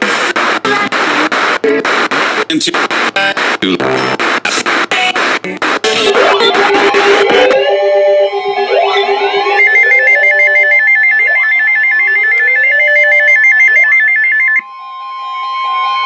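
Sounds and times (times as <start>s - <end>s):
steady alert tone: 6.0s - 13.3s
fast warbling beep: 6.0s - 14.6s
rising electronic chirps: 6.0s - 14.6s.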